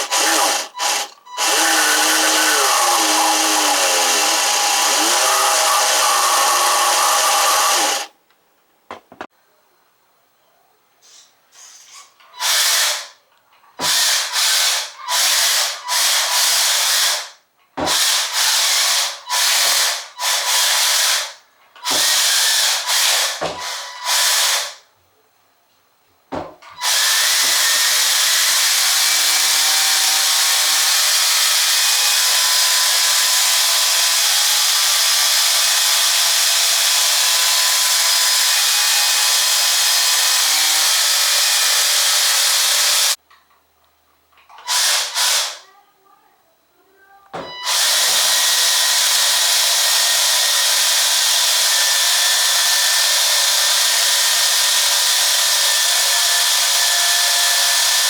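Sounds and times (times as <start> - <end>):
small electric motor whirring: 0.0 - 8.1.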